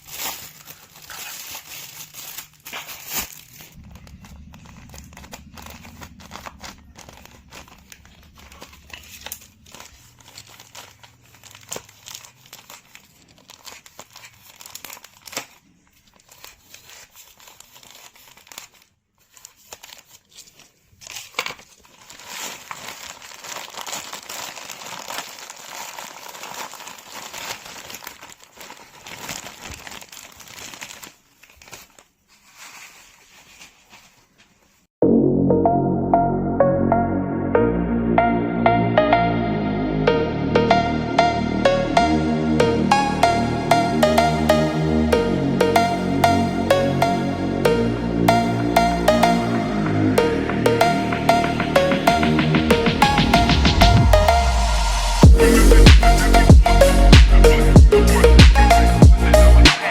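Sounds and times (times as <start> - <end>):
sand and packaging crinkling: 0.0 - 34.9.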